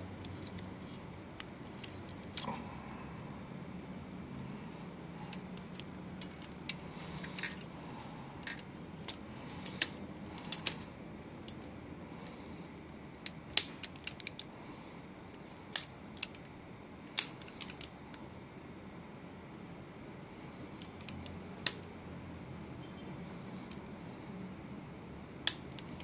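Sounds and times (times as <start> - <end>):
steady low hum: 0.0 - 26.0
small hard parts clicking: 5.2 - 14.5, 15.3 - 18.2, 20.8 - 21.9, 25.4 - 26.0.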